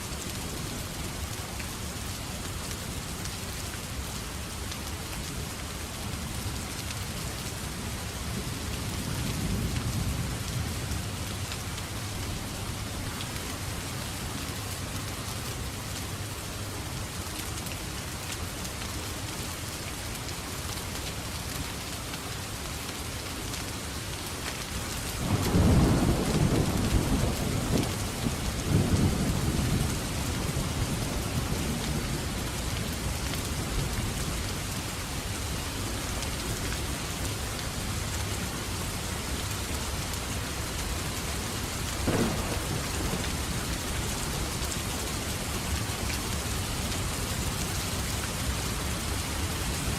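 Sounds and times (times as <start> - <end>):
heavy rain falling: 0.0 - 49.9
sharp thunder crack: 42.0 - 43.9
thunder rumbling: 42.0 - 44.9.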